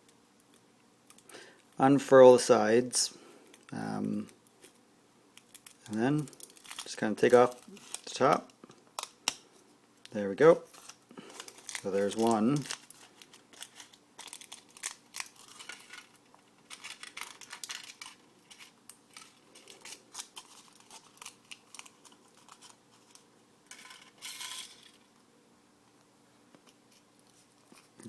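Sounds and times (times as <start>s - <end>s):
foil wrapper crinkling: 5.4s - 24.9s.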